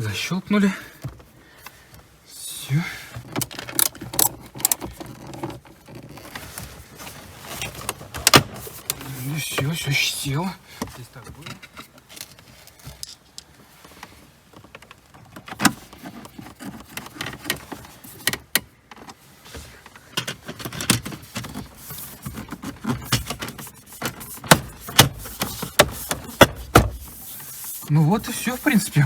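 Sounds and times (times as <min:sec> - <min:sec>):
plastic trim clicks and rattles: 0:03.2 - 0:06.3.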